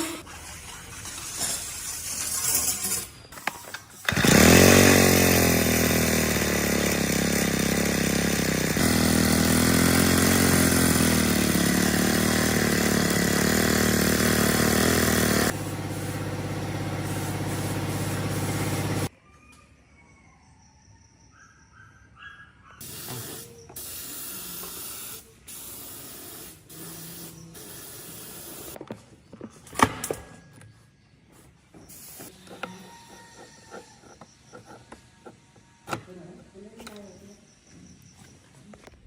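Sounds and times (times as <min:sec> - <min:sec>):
lawn mower engine running: 0:03.4 - 0:19.1.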